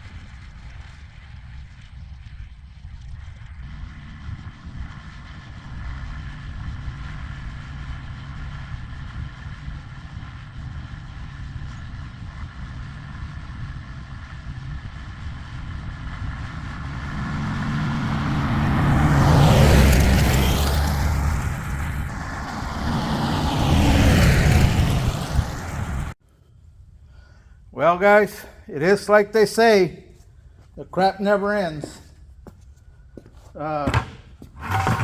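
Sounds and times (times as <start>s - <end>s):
tractor engine running: 14.9s - 26.2s.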